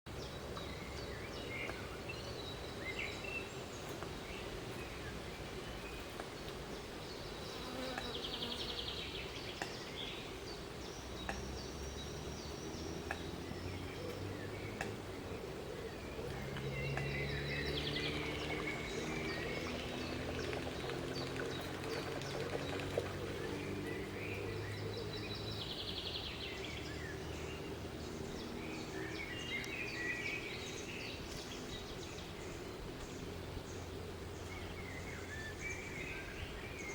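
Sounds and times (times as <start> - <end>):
bird chirps and trills: 10.9 - 36.9.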